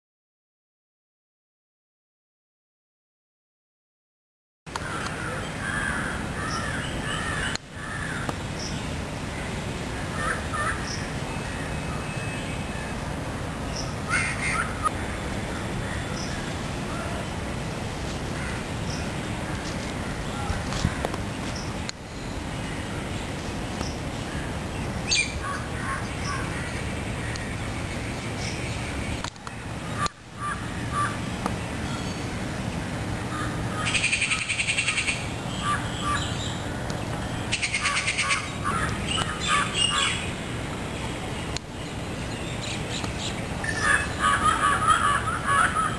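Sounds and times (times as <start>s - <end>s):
crow cawing: 4.8s - 8.3s, 10.1s - 10.9s, 38.0s - 39.7s, 43.7s - 45.9s.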